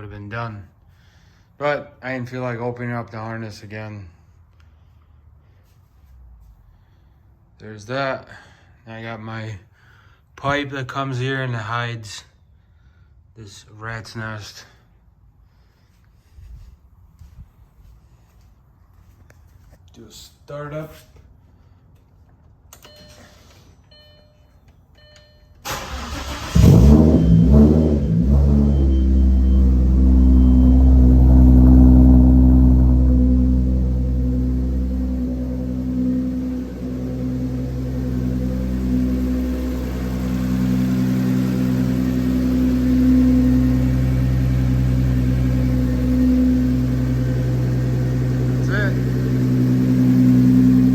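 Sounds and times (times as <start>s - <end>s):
car engine starter cranking: 25.6s - 29.6s
car engine idling: 25.7s - 50.9s
faint beeps: 27.1s - 50.8s.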